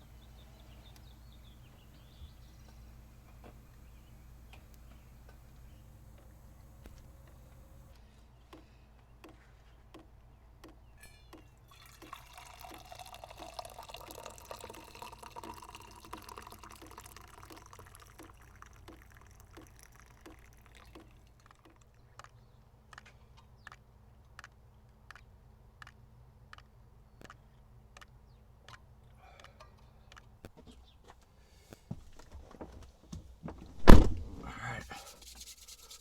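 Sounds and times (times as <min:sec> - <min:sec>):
faint regular ticking: 0:00.0 - 0:08.6, 0:14.8 - 0:23.0
liquid pouring into container: 0:11.6 - 0:22.1.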